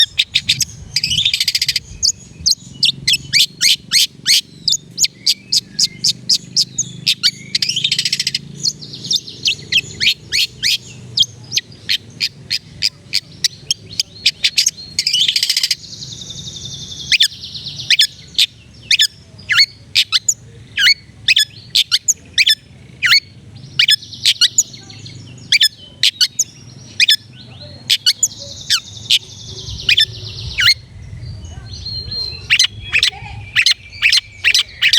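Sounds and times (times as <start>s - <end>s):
bird harsh scratchy chattering: 0.0s - 15.8s, 32.4s - 34.9s.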